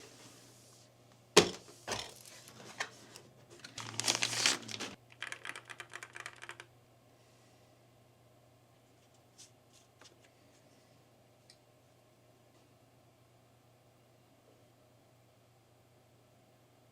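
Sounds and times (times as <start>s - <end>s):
keyboard typing: 5.1s - 6.7s.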